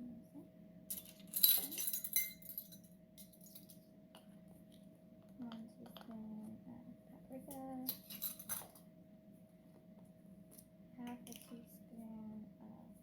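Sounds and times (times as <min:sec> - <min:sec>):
spoon clinking on glass bowl: 0:00.9 - 0:03.6.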